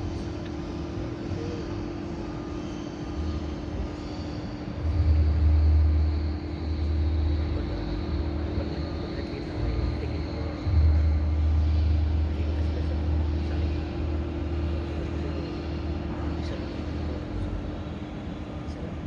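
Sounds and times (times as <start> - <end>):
steady hum: 0.0 - 19.0
low uneven rumble: 4.8 - 19.0.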